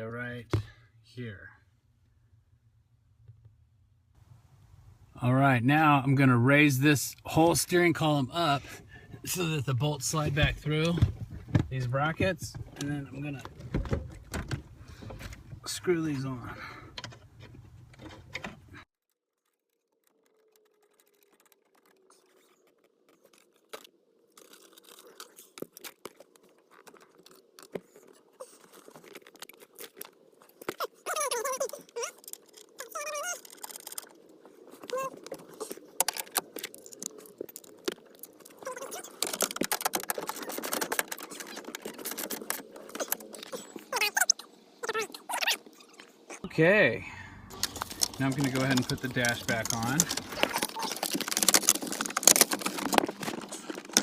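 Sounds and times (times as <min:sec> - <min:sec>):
hand tools clicking and scraping: 0:24.4 - 0:46.4, 0:47.5 - 0:54.0.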